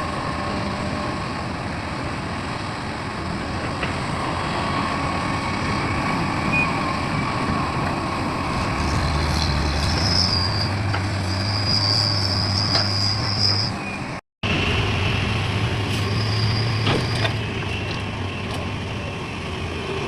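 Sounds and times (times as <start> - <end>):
high metallic squeal: 8.8 - 14.1, 16.0 - 17.8.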